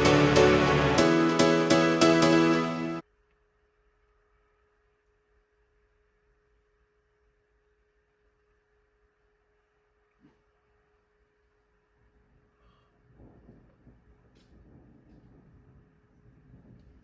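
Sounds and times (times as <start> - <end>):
background music: 0.0 - 3.0.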